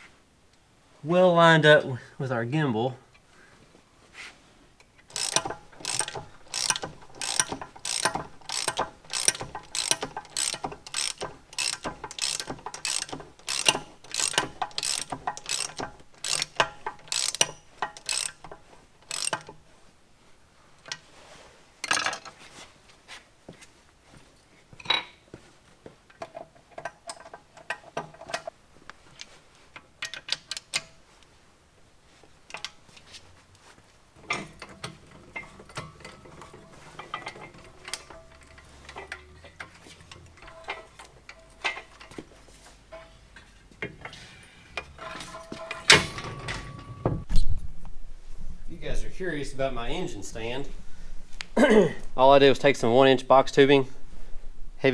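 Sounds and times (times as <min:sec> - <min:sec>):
ratchet wrench clicking: 0:05.1 - 0:19.6.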